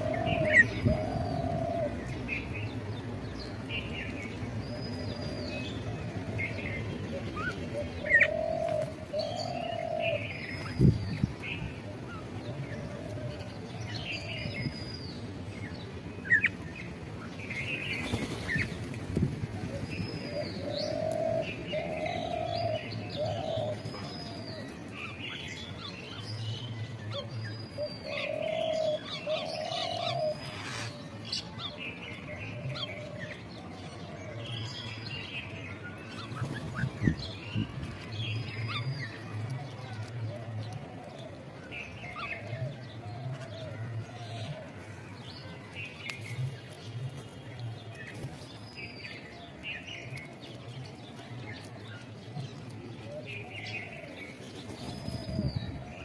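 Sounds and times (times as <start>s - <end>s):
bird cooing: 0.0s - 2.2s, 4.8s - 10.6s, 11.8s - 14.5s, 19.6s - 24.6s, 27.2s - 31.6s, 32.4s - 34.6s, 53.0s - 56.0s.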